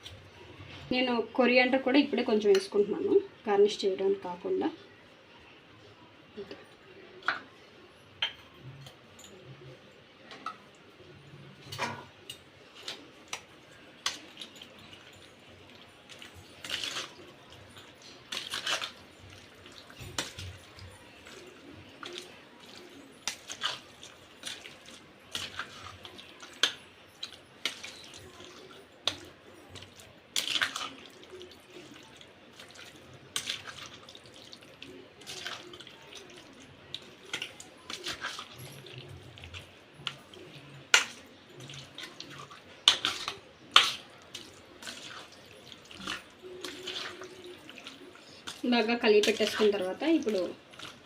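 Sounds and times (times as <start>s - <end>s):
squelching marinade mixing: 10.2s - 51.0s.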